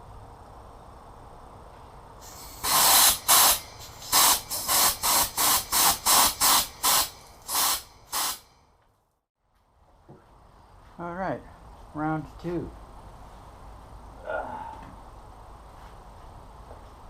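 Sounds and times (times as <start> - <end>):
air and water spraying bursts: 2.2 - 8.6.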